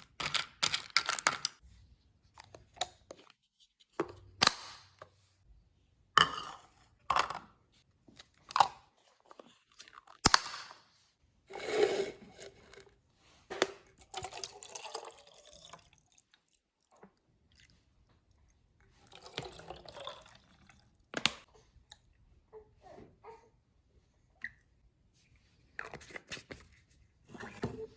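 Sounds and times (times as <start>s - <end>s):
packages clicking and knocking: 0.0s - 1.6s.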